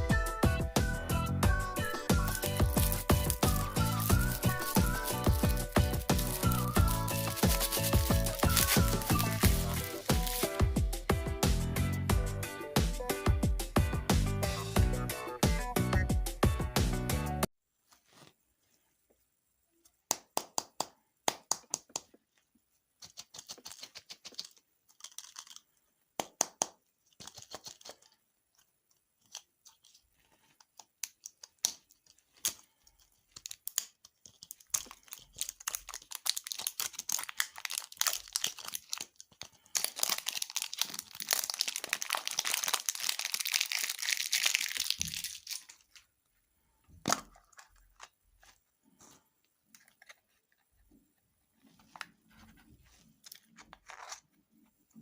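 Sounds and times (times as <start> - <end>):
packaging crinkling and tearing: 2.1 - 10.6, 23.2 - 25.7, 30.7 - 46.1.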